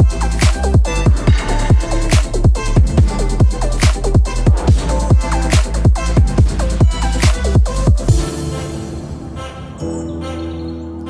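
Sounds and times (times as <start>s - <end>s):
deep bass notes dropping in pitch: 0.0s - 8.4s
electronic music with fast beat: 0.0s - 8.7s.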